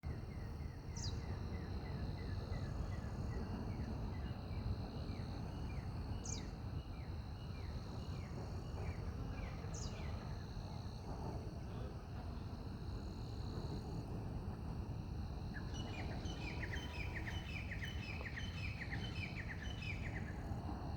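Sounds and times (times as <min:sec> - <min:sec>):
high insect drone: 0:00.1 - 0:20.9.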